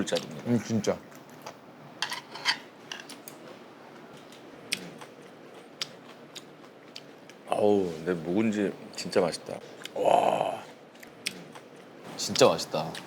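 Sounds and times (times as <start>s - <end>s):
utensils tapping against dishes: 2.0s - 3.1s.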